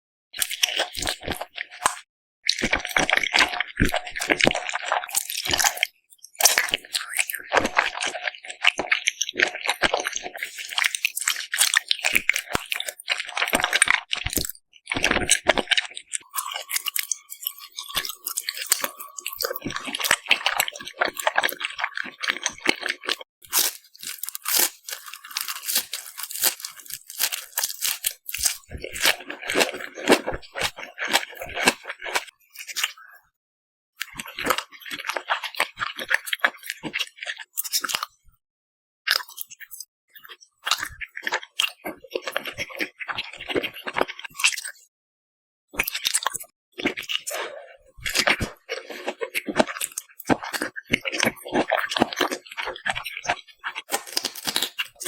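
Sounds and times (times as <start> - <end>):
wet chewing: 0.4 - 33.0, 34.0 - 38.1, 40.7 - 44.6, 45.8 - 55.0
crunchy clicks: 23.4 - 32.2.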